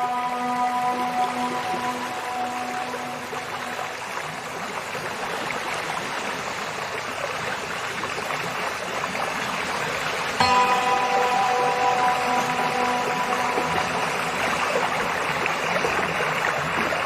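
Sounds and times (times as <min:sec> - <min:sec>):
soft music with held tones: 0:00.0 - 0:05.0, 0:10.4 - 0:17.0
stream water flowing: 0:00.0 - 0:17.0.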